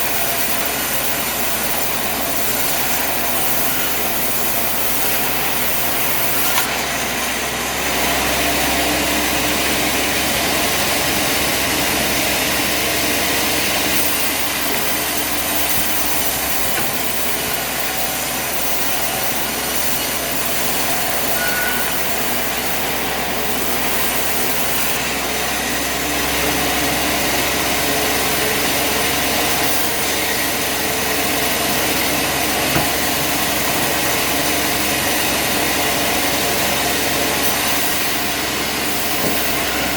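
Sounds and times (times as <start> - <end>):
bandsaw sawmill running: 0.0 - 39.9.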